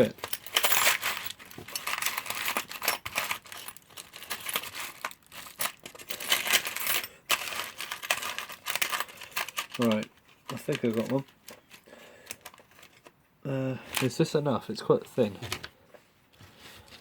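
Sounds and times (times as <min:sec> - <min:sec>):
small parts clinking in a box: 0:00.0 - 0:13.1.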